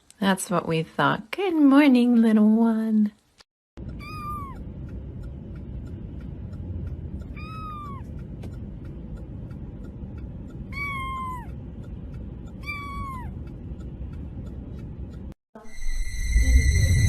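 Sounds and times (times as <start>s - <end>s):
steady low rumble: 3.8s - 17.0s
kitten meowing: 3.9s - 4.6s, 7.2s - 8.1s, 10.7s - 11.6s, 12.6s - 13.4s.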